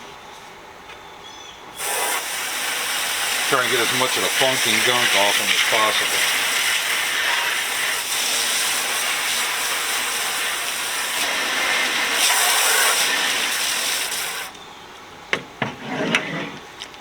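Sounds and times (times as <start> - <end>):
hose spraying water on metal: 1.8 - 14.6.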